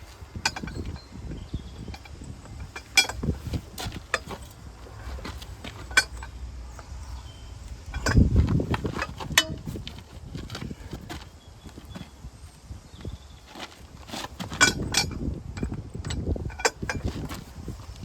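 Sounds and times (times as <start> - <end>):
low handling rumble: 0.0 - 12.2
metallic clinks and knocks: 0.1 - 7.2, 7.8 - 11.2.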